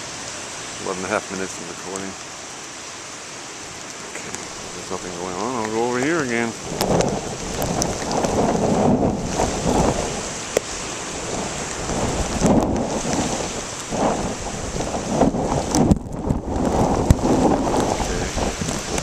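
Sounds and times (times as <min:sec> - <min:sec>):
rain hiss: 0:00.0 - 0:19.0
gusty wind on microphone: 0:04.2 - 0:19.0.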